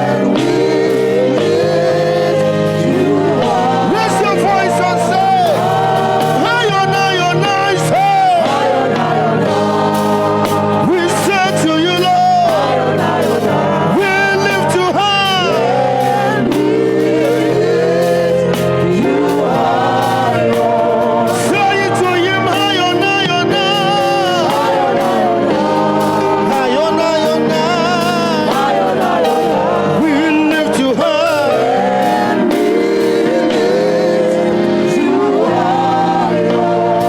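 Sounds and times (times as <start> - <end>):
sustained keyboard chords: 0.0 - 37.0
voices singing praise song: 0.0 - 37.0.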